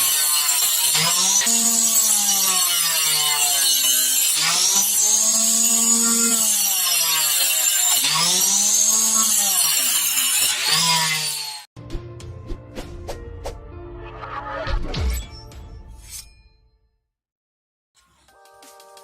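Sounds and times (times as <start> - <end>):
circular saw cutting wood: 0.0 - 11.7.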